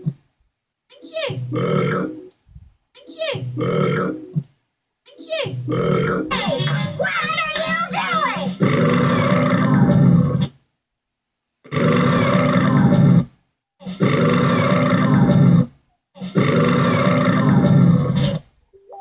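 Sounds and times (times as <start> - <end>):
cartoon belches: 1.5 - 2.2, 3.6 - 4.3, 5.7 - 7.0.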